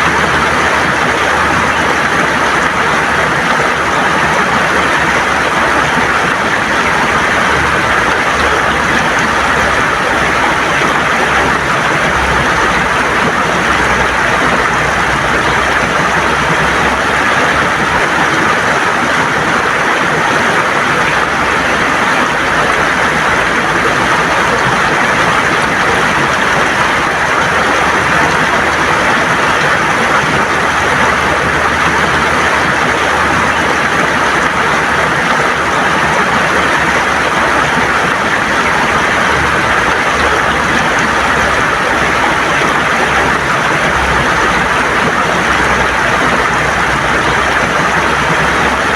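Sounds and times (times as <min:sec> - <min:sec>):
river water rushing over stones: 0:00.0 - 0:48.9.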